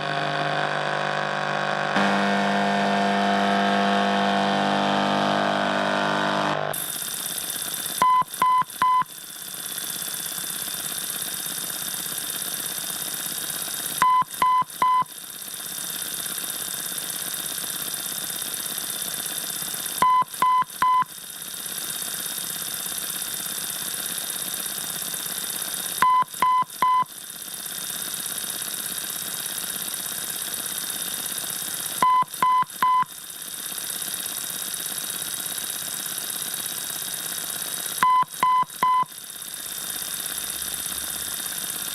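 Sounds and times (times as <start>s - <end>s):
radio static hiss: 0.0s - 8.8s.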